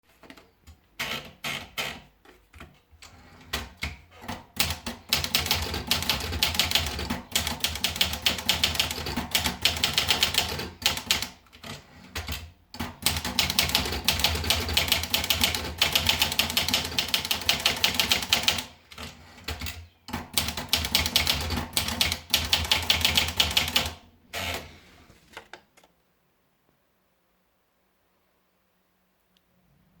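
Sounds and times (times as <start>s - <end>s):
manual typewriter typing: 3.0s - 24.7s.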